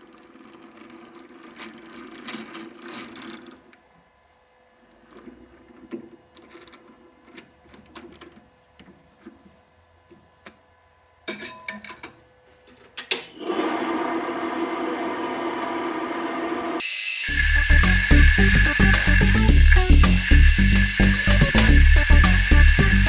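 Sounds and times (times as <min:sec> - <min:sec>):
small machine humming: 0:13.9 - 0:23.0.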